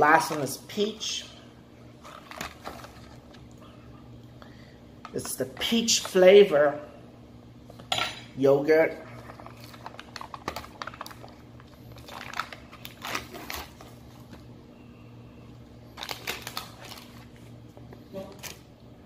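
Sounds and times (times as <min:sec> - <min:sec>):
plastic cup and foil crinkling: 0:01.9 - 0:03.6, 0:05.0 - 0:06.4, 0:08.9 - 0:14.5, 0:15.4 - 0:18.7.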